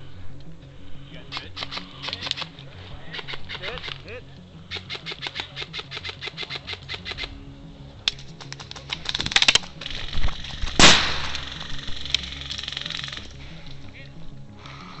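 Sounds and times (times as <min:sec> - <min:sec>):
background music: 0:00.0 - 0:15.0
airsoft guns firing: 0:10.7 - 0:13.3.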